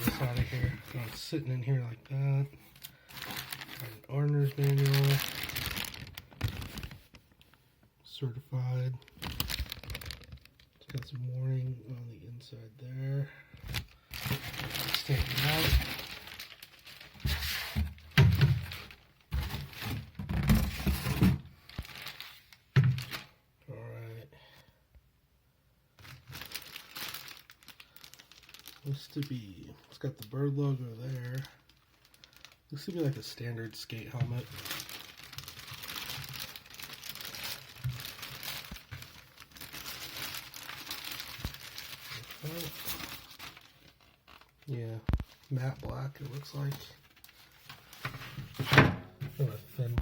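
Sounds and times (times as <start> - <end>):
packaging crinkling and rustling: 0.0 - 7.7, 9.0 - 11.4, 13.6 - 23.4, 26.0 - 50.0.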